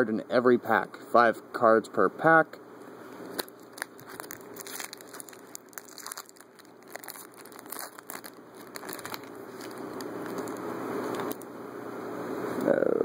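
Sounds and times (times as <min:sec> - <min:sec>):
wrapper tearing and crinkling: 0:03.2 - 0:11.4.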